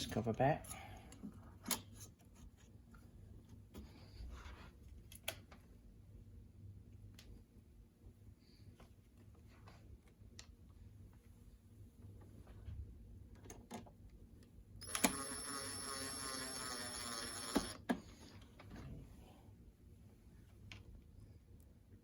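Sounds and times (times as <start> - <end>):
cordless power screwdriver running: 14.8 - 17.8.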